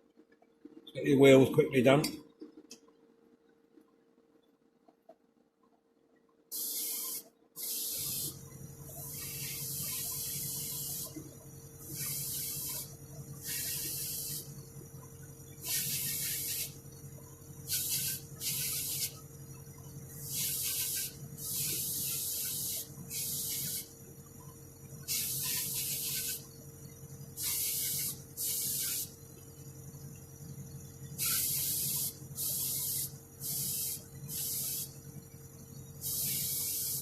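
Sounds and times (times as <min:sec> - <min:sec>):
spray gun hissing: 0:06.5 - 0:08.4, 0:09.1 - 0:11.2, 0:11.8 - 0:14.5, 0:15.6 - 0:16.8, 0:17.7 - 0:19.2, 0:20.2 - 0:23.9, 0:25.0 - 0:26.4, 0:27.4 - 0:29.1, 0:31.2 - 0:35.0, 0:36.0 - 0:37.0
air compressor humming: 0:06.5 - 0:37.0.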